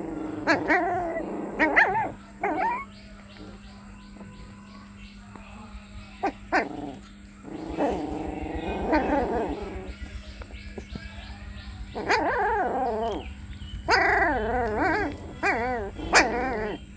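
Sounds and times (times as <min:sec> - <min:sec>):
puppy whining and yelping: 0:00.0 - 0:03.6, 0:07.6 - 0:10.0, 0:12.0 - 0:16.9
steady low hum: 0:00.0 - 0:16.9.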